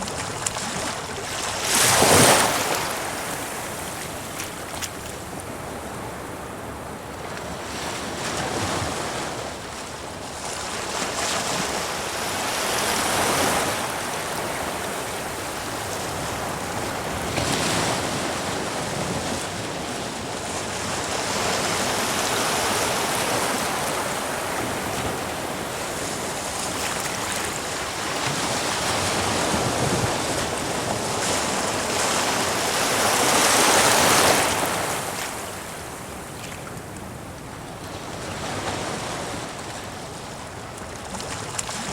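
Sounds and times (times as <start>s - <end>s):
ocean waves breaking on rocks: 0.0s - 41.9s.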